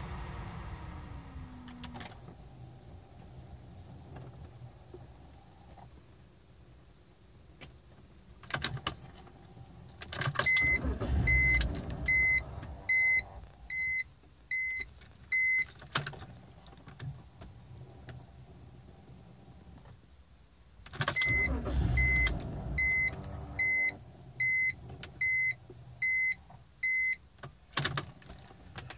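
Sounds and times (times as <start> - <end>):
engine cranking without starting: 10.2 - 13.4, 21.0 - 25.1
dashboard warning chime beeping: 10.5 - 15.7, 21.2 - 27.2.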